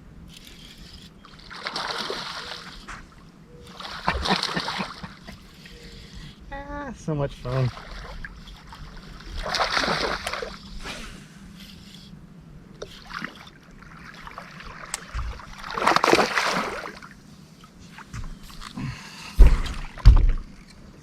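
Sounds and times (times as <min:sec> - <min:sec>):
water splashing: 0:01.4 - 0:03.1, 0:03.7 - 0:05.3, 0:07.5 - 0:10.6, 0:12.8 - 0:17.2.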